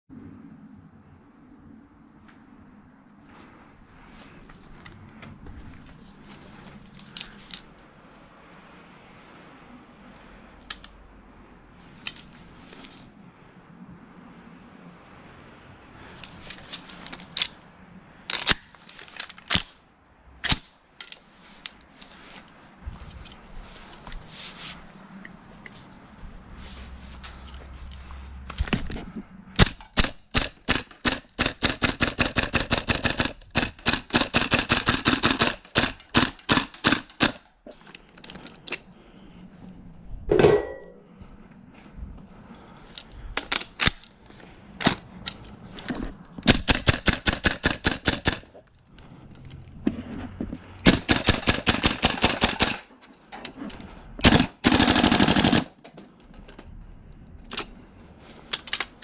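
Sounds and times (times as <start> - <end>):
airsoft rifle firing rapidly: 29.6 - 37.4, 46.5 - 48.4, 50.8 - 52.8, 54.2 - 55.8.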